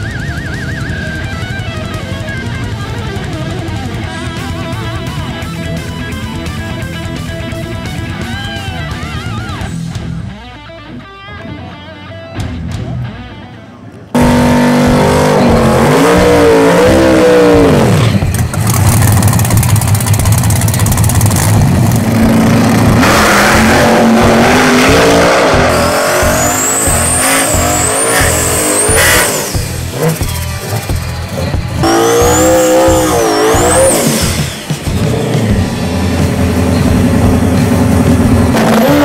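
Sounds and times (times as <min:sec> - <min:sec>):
high whine: 0:13.6 - 0:39.0
loud racing car engine revving: 0:14.1 - 0:39.0.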